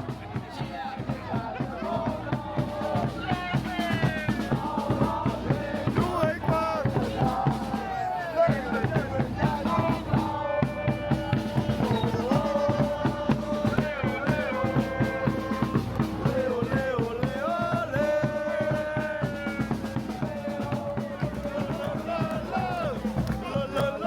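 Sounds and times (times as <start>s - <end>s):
music with drum beat and melody: 0.0s - 24.0s.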